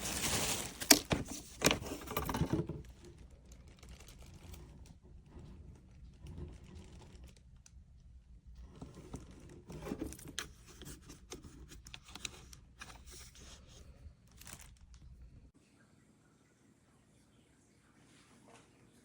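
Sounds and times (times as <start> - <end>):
rustling and scraping of handling: 0.0 - 15.5.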